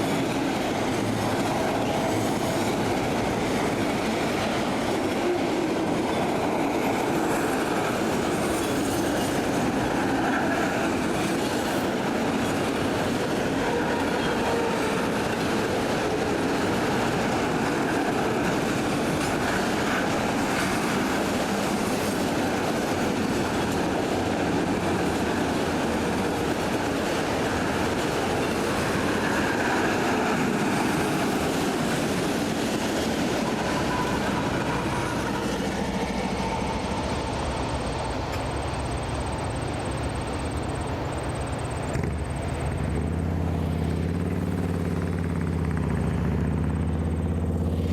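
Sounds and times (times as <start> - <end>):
freight train rolling on rails: 0.0 - 47.9.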